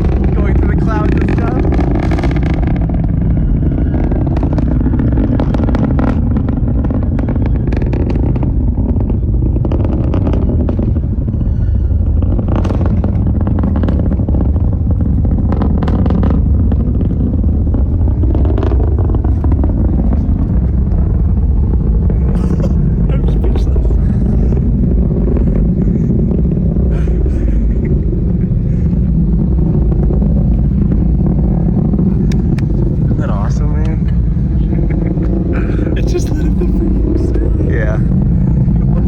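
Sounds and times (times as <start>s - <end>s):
rocket crackles: 0.0s - 39.0s
rocket engines deep rumble: 0.0s - 39.0s.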